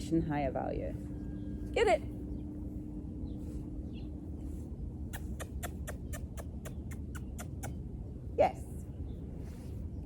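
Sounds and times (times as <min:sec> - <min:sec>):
person making kissy noises: 0:05.1 - 0:07.8.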